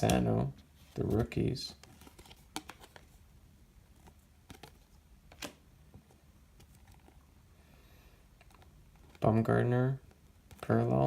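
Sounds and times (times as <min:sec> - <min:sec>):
cards being flipped: 0:00.9 - 0:03.2, 0:03.9 - 0:07.2, 0:08.4 - 0:09.2.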